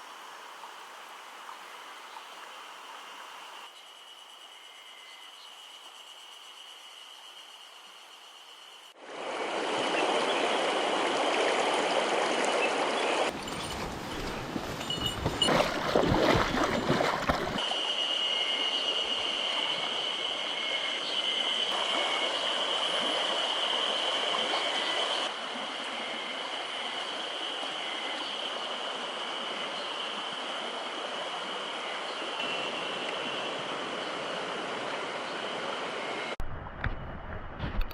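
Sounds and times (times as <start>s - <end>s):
mountain stream rushing: 8.9s - 36.4s.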